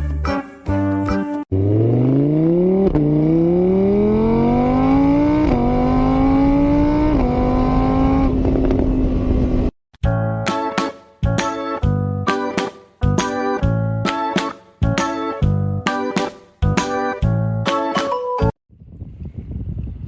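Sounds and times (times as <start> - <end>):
music: 0.0 - 1.5, 10.0 - 18.6
car engine accelerating: 1.5 - 9.8.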